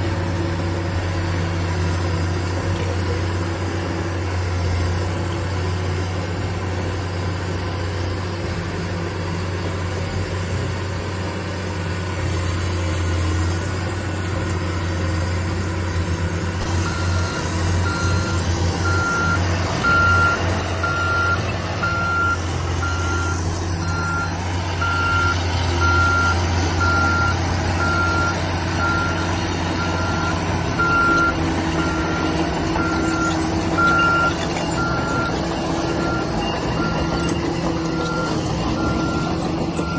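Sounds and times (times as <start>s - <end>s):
diesel engine running under load: 0.0s - 39.9s
reverse alarm beeping: 15.0s - 39.9s.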